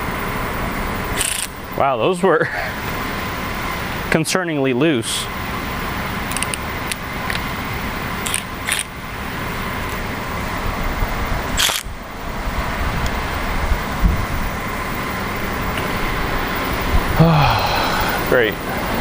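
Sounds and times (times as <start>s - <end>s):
steady background hiss: 0.1s - 19.0s
engine parts and tools clicking: 1.2s - 1.6s, 6.2s - 7.5s, 8.1s - 9.0s, 11.6s - 12.0s.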